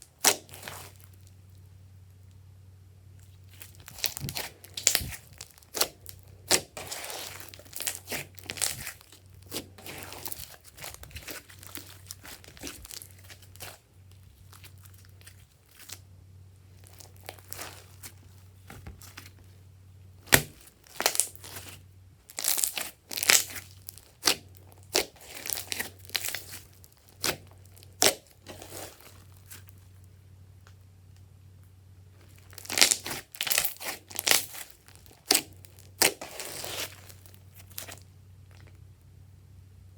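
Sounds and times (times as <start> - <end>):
slime popping and crackling: 3.5 - 13.8, 16.8 - 18.2, 20.2 - 29.6, 32.3 - 38.7.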